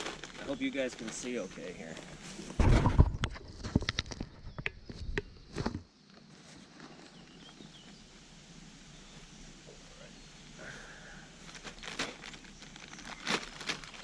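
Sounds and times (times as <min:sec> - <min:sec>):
packets and containers clicking: 0:00.0 - 0:01.8, 0:11.5 - 0:14.0.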